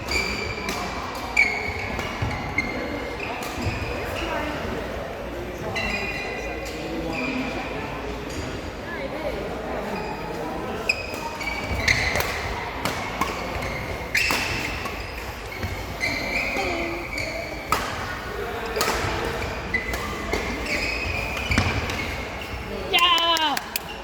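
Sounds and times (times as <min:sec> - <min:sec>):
shoes squeaking on court floor: 0:00.0 - 0:04.8, 0:05.6 - 0:08.8, 0:09.8 - 0:24.0
balls bouncing with echoing thuds: 0:18.8 - 0:22.6.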